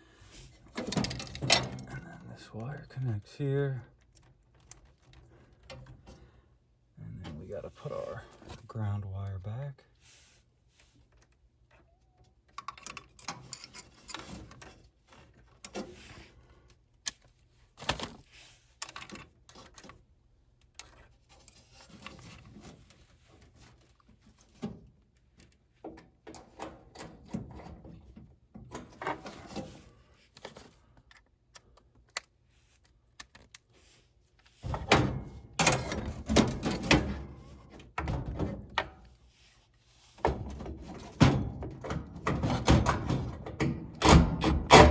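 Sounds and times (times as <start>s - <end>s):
tools and metal parts clattering: 0.4s - 2.7s, 12.5s - 16.3s, 20.8s - 30.8s, 34.4s - 39.2s, 40.1s - 44.9s.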